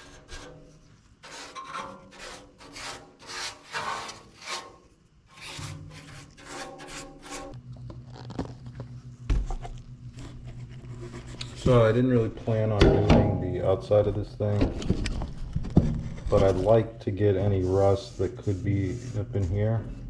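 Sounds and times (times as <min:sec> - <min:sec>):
brush scrubbing sheet metal: 0:00.0 - 0:07.6, 0:16.3 - 0:20.0.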